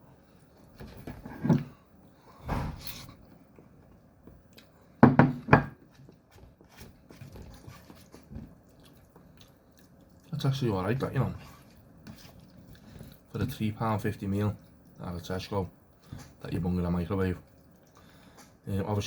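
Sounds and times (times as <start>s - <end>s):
quiet chewing: 2.8s - 4.9s, 5.9s - 16.6s, 17.2s - 18.6s.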